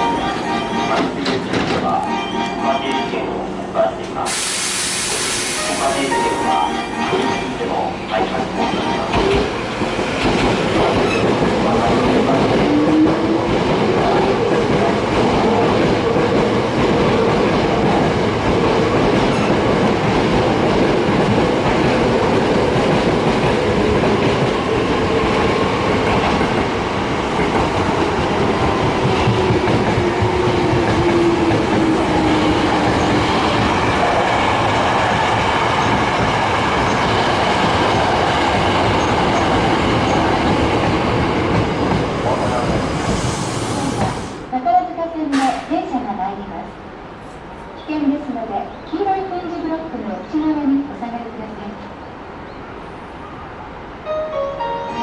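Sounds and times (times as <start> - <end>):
train whining tone: 0.0 - 13.4
train wheels clattering over rails: 1.0 - 2.0, 9.1 - 44.4.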